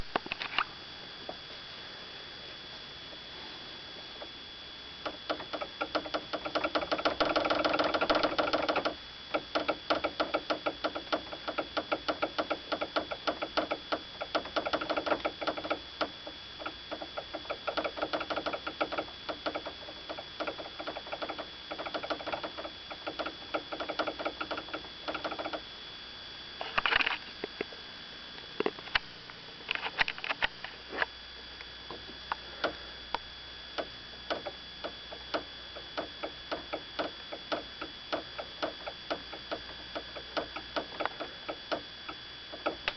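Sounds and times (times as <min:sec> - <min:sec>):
rapid rattling taps: 0:05.0 - 0:25.6, 0:34.3 - 0:41.8.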